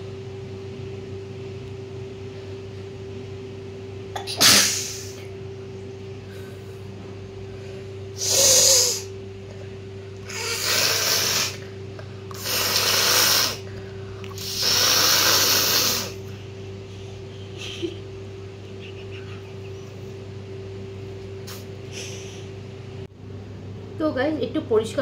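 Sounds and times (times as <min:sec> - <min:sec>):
person blowing nose: 0:04.4 - 0:05.2, 0:08.2 - 0:09.1, 0:10.3 - 0:11.6, 0:12.3 - 0:13.7, 0:14.4 - 0:16.2.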